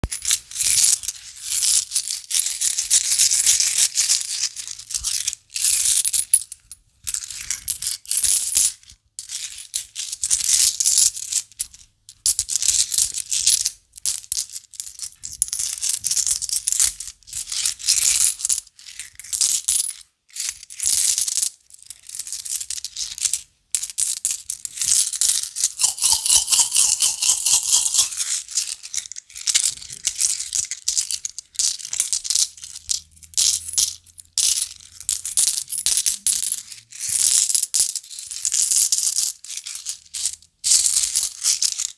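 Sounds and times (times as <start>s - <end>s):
coins jingling in a hand: 0.1s - 11.6s, 12.3s - 41.9s
coin ringing: 25.8s - 28.2s.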